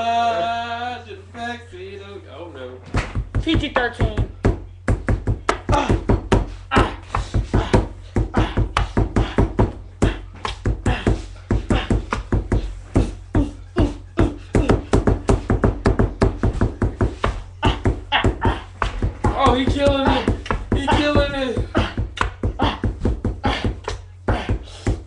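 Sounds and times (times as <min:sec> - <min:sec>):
person beatboxing: 0:17.6 - 0:25.0.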